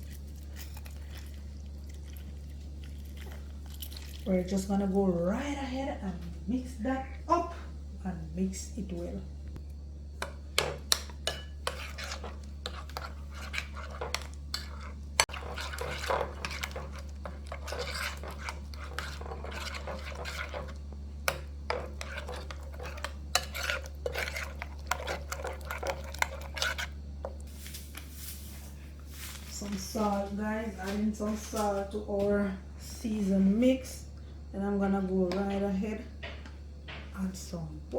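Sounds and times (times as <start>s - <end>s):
utensil stirring wet mix: 0.0s - 4.6s, 10.1s - 27.5s
utensil clinking and scraping: 10.6s - 27.0s.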